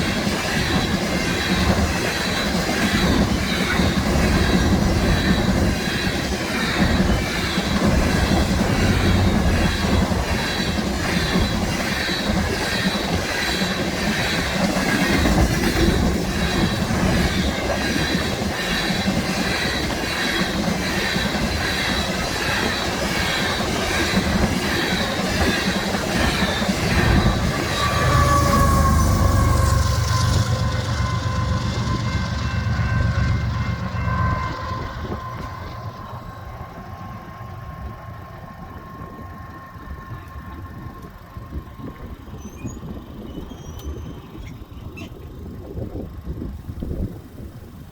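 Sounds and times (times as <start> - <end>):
train wheels clattering on rails: 0.0 - 37.0
locomotive horn: 27.0 - 36.0.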